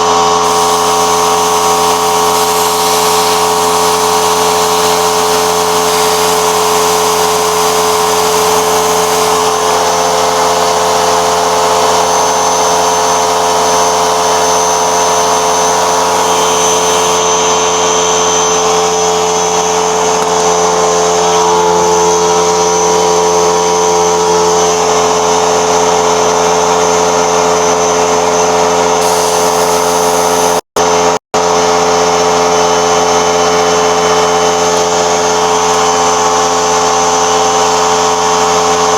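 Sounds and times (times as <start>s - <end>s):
machine motor humming: 0.1s - 17.4s, 29.0s - 30.6s.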